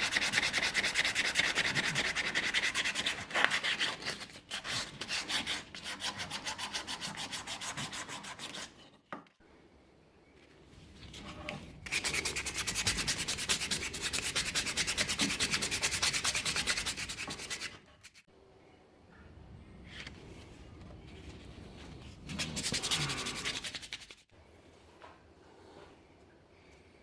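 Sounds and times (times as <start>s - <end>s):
hand sanding strokes: 0.0s - 8.8s, 11.9s - 18.3s, 22.3s - 24.2s.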